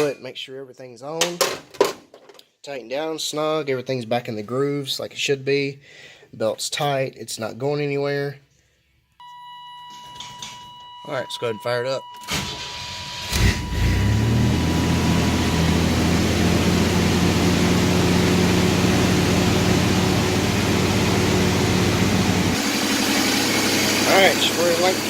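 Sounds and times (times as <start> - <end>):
engine cranking and idling: 12.2 - 25.0.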